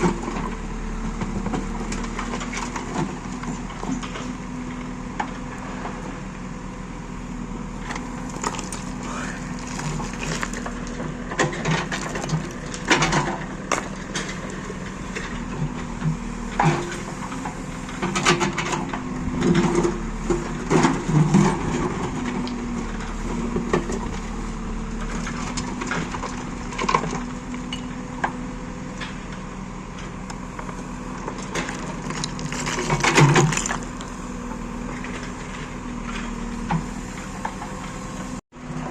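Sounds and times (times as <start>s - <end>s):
backhoe diesel engine running: 0.0s - 38.9s
earth and stones crunching: 7.9s - 17.1s, 31.0s - 34.1s.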